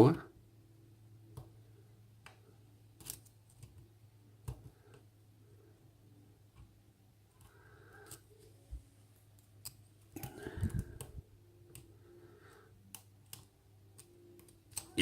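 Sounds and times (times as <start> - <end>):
lock pick clicking and scraping: 3.0 - 3.7, 12.9 - 15.0.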